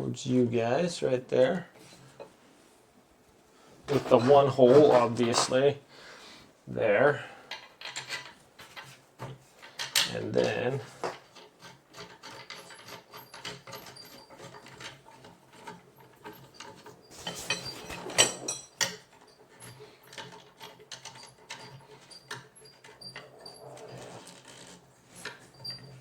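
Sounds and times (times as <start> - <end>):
work table squeaking: 3.9 - 5.6, 7.9 - 26.0.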